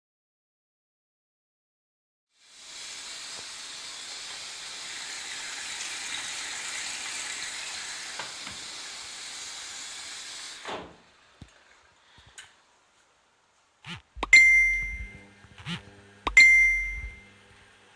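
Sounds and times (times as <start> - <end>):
water hissing into washing machine: 2.4 - 12.9.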